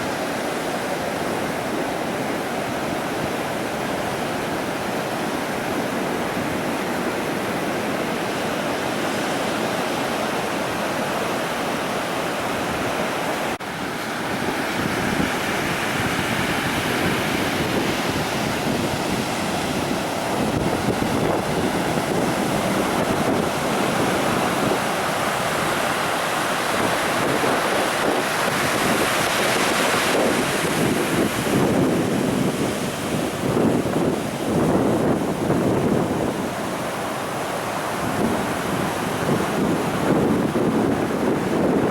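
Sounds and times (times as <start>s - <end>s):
ocean waves breaking on a beach: 0.0s - 41.9s
wind buffeting microphone: 0.0s - 41.9s.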